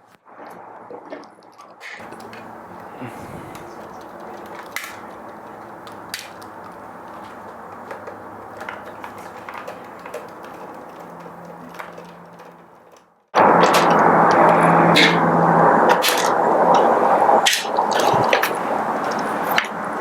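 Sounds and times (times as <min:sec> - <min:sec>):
low hum and hiss: 0:02.0 - 0:09.5.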